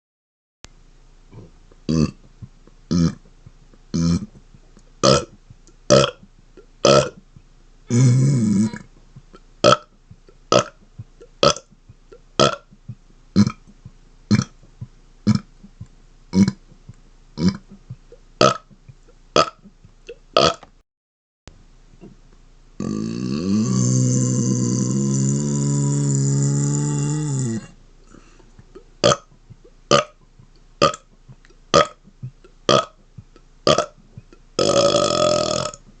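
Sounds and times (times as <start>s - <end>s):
man burping: 1.4s - 2.2s, 2.9s - 3.2s, 3.9s - 4.4s, 5.0s - 6.2s, 6.8s - 7.2s, 7.9s - 8.9s, 10.5s - 10.8s, 13.4s - 13.6s, 16.3s - 16.6s, 17.4s - 17.8s, 22.8s - 27.8s, 32.7s - 32.9s, 34.6s - 35.8s.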